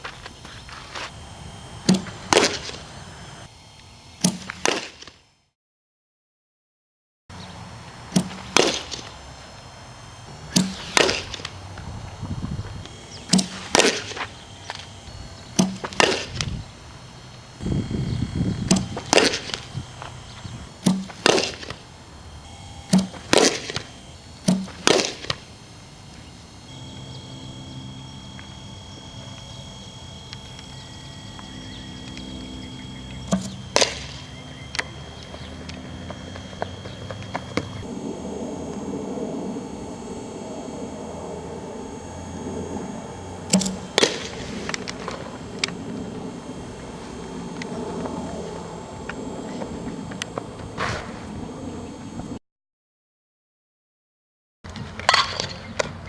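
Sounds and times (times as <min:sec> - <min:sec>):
background hum: 0:00.0 - 0:05.5, 0:07.3 - 0:52.4
softball being struck or caught: 0:01.9 - 0:02.8, 0:08.2 - 0:09.0.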